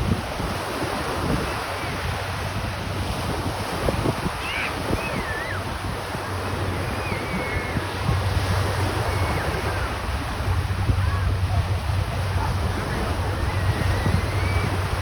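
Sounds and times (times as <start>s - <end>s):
water noise: 0.0s - 15.0s
wind buffeting microphone: 0.0s - 15.0s
faint high sliding whistles: 6.8s - 7.8s.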